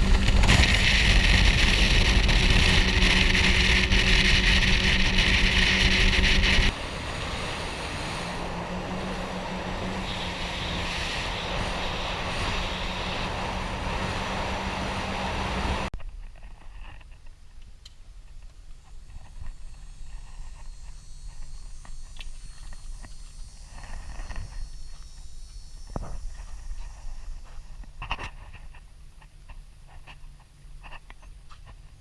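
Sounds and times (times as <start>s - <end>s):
outboard engine drone: 0.0s - 15.9s
water noise: 0.0s - 15.9s
wind: 0.0s - 32.0s.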